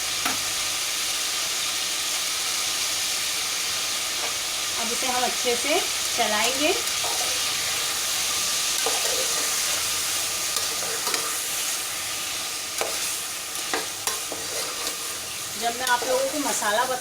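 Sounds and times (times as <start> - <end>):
chicken sizzling in hot oil: 0.0 - 17.0
spoon stirring in pot: 8.7 - 9.8, 12.8 - 16.4.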